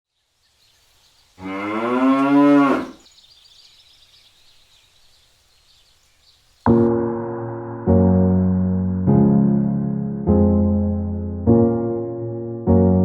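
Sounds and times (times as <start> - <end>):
cow mooing: 1.4 - 3.0.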